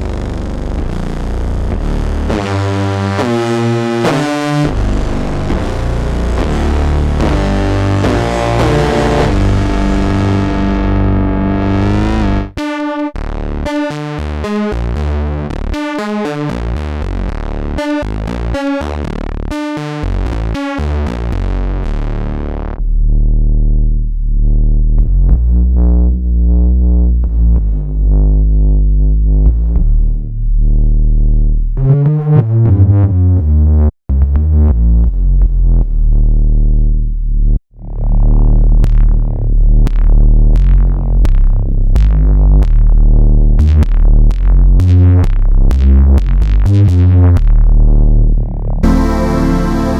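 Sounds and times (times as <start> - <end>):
pulsing synth stabs: 0.0 - 13.1, 48.8 - 49.9
deep synth bass line: 0.0 - 49.9.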